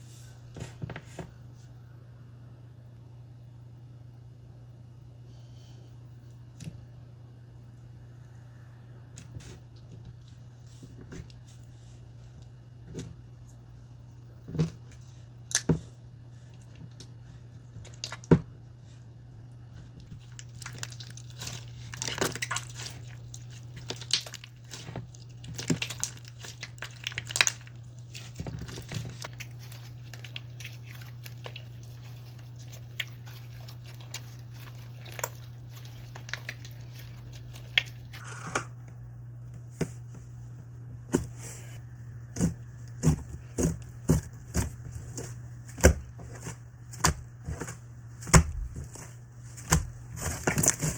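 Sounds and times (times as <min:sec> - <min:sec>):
slime squishing and popping: 0:20.1 - 0:38.2.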